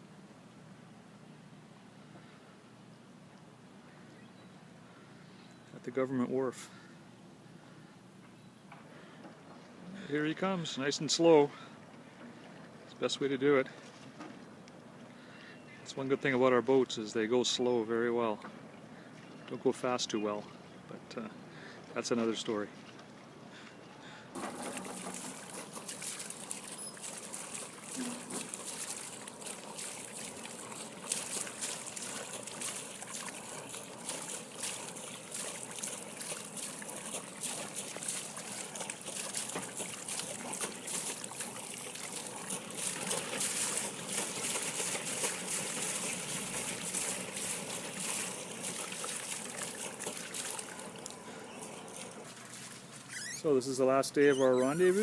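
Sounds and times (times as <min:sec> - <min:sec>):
water splashing and trickling: 0:24.4 - 0:55.0.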